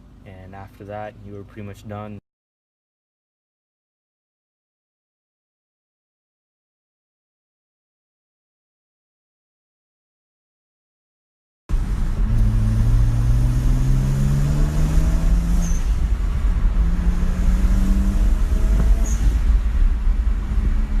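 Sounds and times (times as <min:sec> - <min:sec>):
car engine accelerating: 0:11.7 - 0:21.0.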